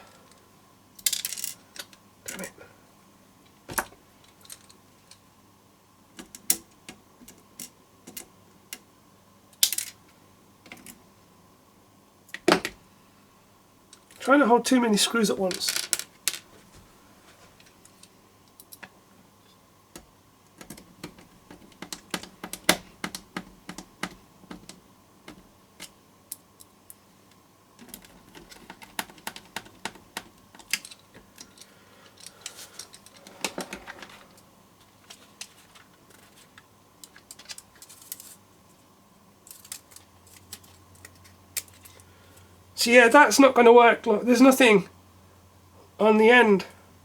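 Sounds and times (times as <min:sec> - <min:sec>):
plastic computer case clicking: 0:20.6 - 0:25.4, 0:27.8 - 0:30.9.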